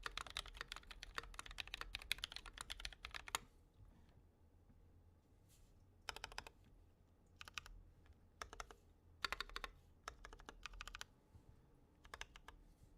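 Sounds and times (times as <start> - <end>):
typing on mechanical keyboard: 0.0 - 3.4, 6.1 - 6.5, 7.4 - 7.7, 8.4 - 11.1, 12.0 - 12.6.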